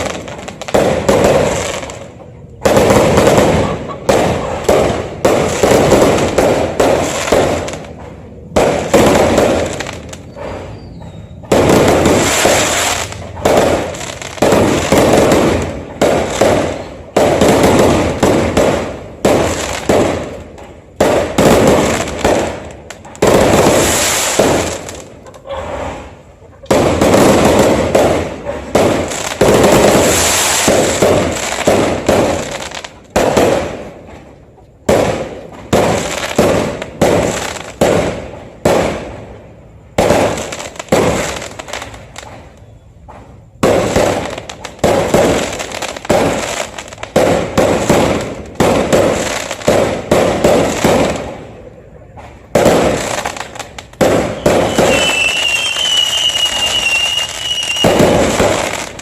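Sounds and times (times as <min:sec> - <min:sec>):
fireworks bangs: 0:00.0 - 0:59.0
high whistle: 0:54.3 - 0:58.0.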